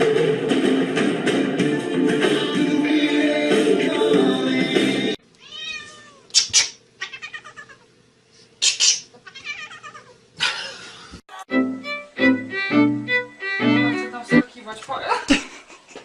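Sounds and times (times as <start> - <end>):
music: 0.0 - 5.2, 11.3 - 14.5
cat meowing: 5.4 - 6.3, 7.0 - 7.9, 9.2 - 10.2
cat harsh cries: 5.4 - 7.9, 9.2 - 10.2.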